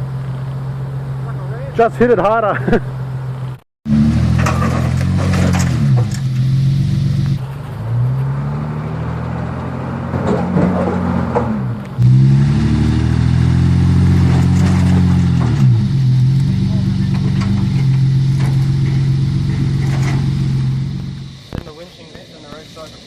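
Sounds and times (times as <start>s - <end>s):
engine revving hard: 3.9s - 21.5s
knocks and scrapes: 4.1s - 8.4s, 9.9s - 12.2s, 13.9s - 21.7s.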